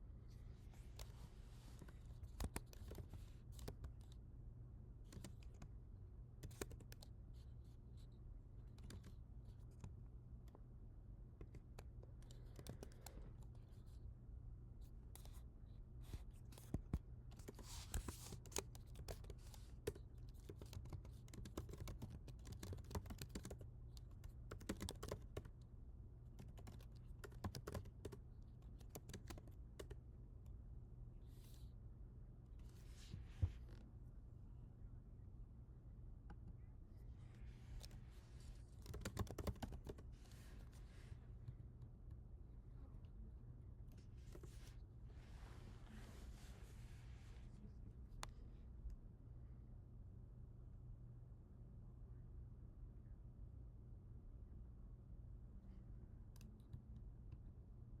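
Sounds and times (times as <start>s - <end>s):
steady low hum: 0.0s - 58.0s
computer keyboard typing: 2.4s - 4.1s, 6.4s - 7.1s, 8.7s - 9.2s, 12.2s - 13.2s, 17.4s - 25.5s, 26.3s - 30.0s, 38.8s - 40.0s.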